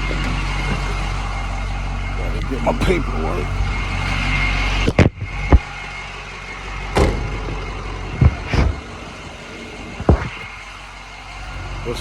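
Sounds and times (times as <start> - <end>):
truck engine idling: 0.0 - 12.0
sharp knocks: 6.9 - 8.8, 9.9 - 10.5.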